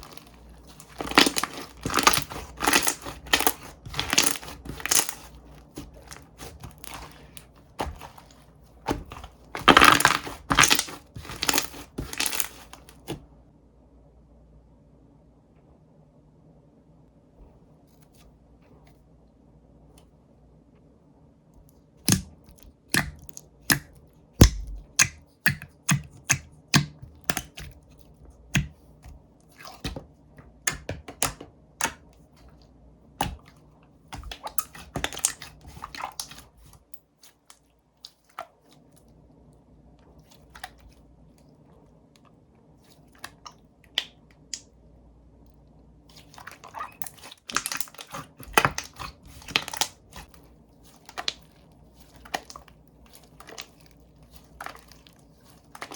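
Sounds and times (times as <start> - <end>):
slime clicking and popping: 0.0 - 7.2, 8.9 - 12.7, 22.1 - 27.8.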